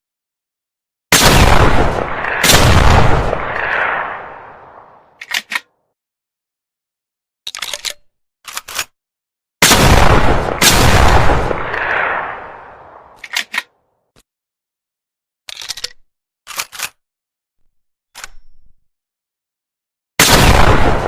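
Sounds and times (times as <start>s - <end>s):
shotgun shots echoing: 1.2s - 5.1s, 9.6s - 13.2s, 20.2s - 21.0s
sharp clicks: 5.2s - 5.7s.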